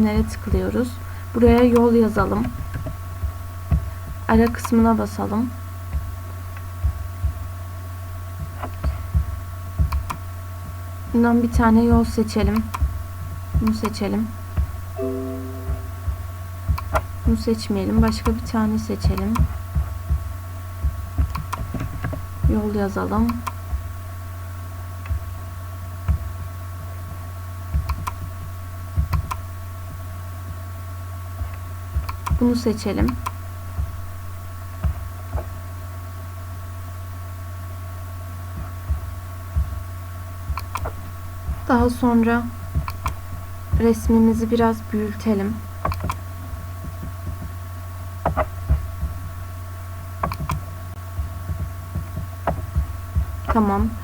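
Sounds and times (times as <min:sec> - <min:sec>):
low electrical hum: 0:00.0 - 0:54.0
computer mouse clicks: 0:09.8 - 0:10.2, 0:12.5 - 0:12.9, 0:21.2 - 0:22.2, 0:27.8 - 0:28.3, 0:29.0 - 0:29.4, 0:32.0 - 0:32.4, 0:42.8 - 0:43.2, 0:45.8 - 0:46.2, 0:50.2 - 0:50.6
computer clicks: 0:50.2 - 0:50.6.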